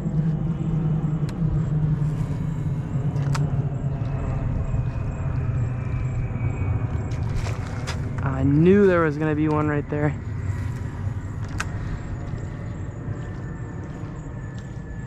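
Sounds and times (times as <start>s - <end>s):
low engine-like hum: 0.0s - 15.0s.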